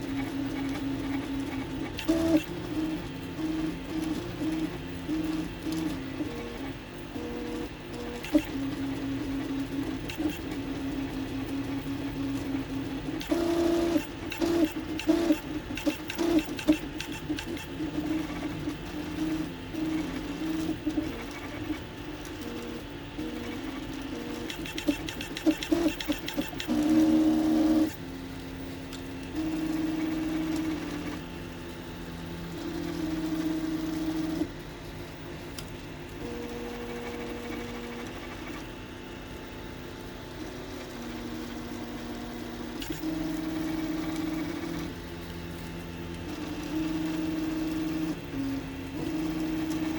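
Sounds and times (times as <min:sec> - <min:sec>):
stepper motors humming: 0:00.0 - 0:34.6.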